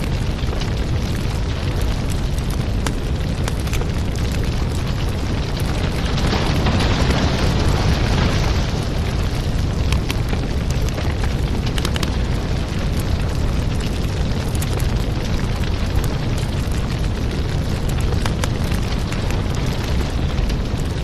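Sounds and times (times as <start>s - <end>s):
sharp clicks and crackles: 0.0s - 21.0s.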